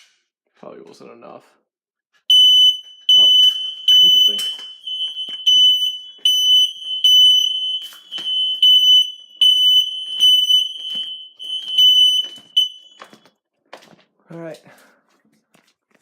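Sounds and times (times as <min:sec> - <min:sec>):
smoke alarm shrill beeping: 0:02.3 - 0:13.3.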